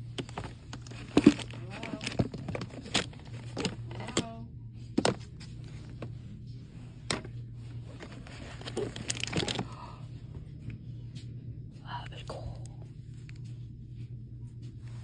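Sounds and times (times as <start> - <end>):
items clicking and knocking: 0.0 - 6.2, 7.0 - 9.8
low hum: 0.0 - 15.0.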